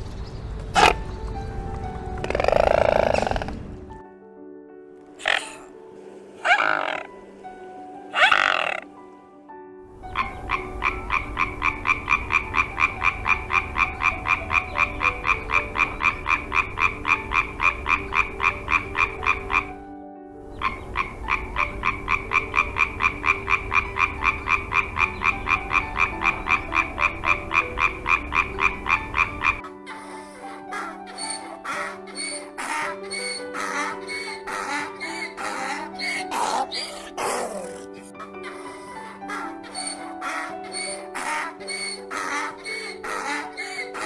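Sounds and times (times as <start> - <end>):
frog croaking rapidly: 2.2 - 3.7, 5.2 - 5.7, 6.4 - 7.1, 8.2 - 8.9, 10.0 - 19.8, 20.5 - 29.6, 31.2 - 38.0.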